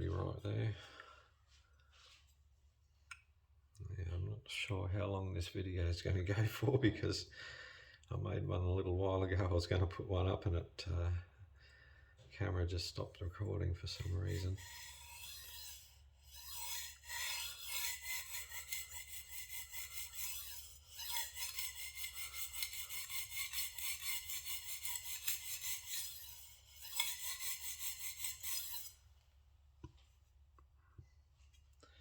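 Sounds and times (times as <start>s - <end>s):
knife scraping on sharpening stone: 14.0s - 29.0s.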